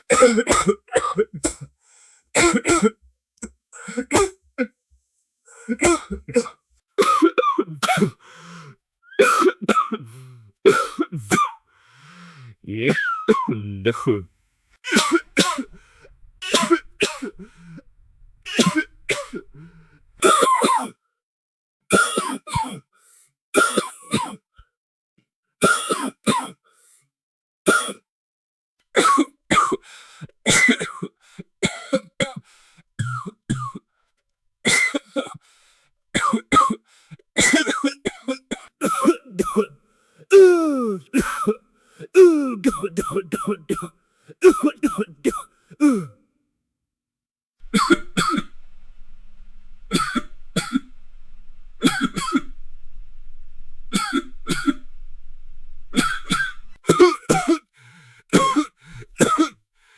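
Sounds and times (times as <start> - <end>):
person coughing: 5.8 - 8.2, 10.7 - 11.6, 47.8 - 48.6, 49.9 - 51.0, 51.8 - 52.6, 53.9 - 54.8, 56.0 - 57.6, 58.4 - 59.5.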